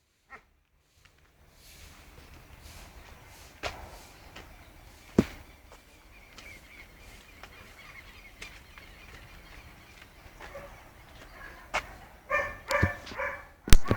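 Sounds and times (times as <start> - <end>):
dogs yelping: 10.4 - 13.9.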